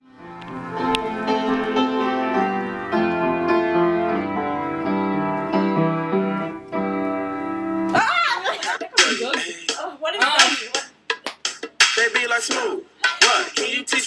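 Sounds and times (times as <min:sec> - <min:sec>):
sustained keyboard notes: 0:00.2 - 0:08.0.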